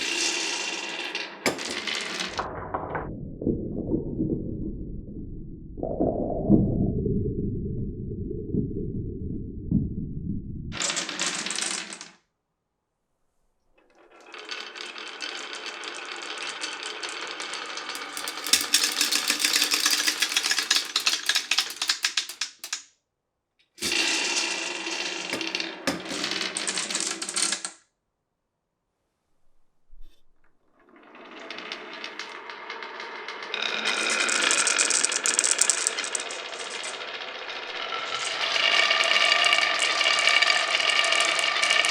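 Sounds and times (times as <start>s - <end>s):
glass marbles rolling on wooden run: 0.0s - 2.5s, 10.8s - 12.2s, 13.9s - 22.8s, 23.8s - 27.8s, 30.8s - 41.9s.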